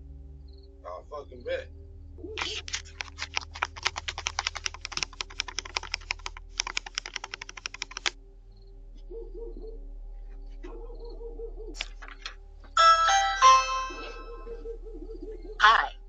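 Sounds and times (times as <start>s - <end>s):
rapid sharp tapping: 2.4s - 8.2s.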